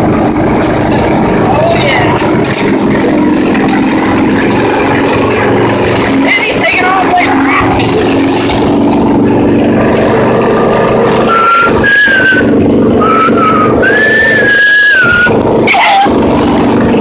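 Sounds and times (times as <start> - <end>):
lawn mower engine running: 0.0 - 17.0
high wavering whistle tone: 11.2 - 15.4.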